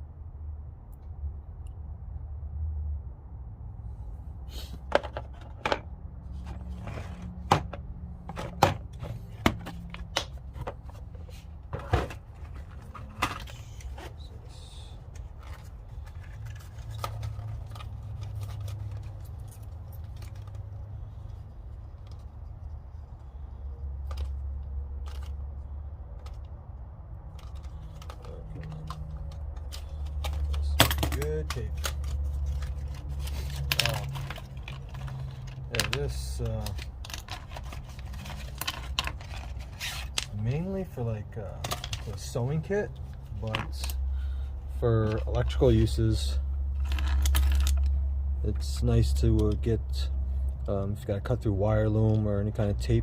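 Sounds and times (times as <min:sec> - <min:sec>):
steady low hum: 0:00.0 - 0:52.8
tools clicking and tapping: 0:27.4 - 0:32.7.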